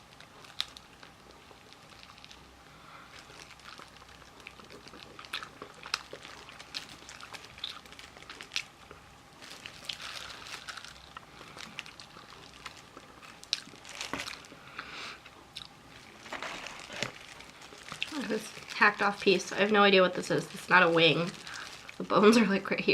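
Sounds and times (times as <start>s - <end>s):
person chewing crispy food: 0.0s - 22.1s.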